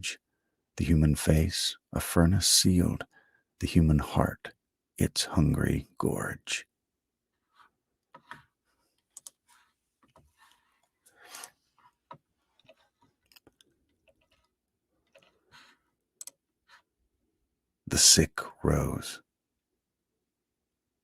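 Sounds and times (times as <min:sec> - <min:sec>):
soft rustles: 0:07.4 - 0:15.9.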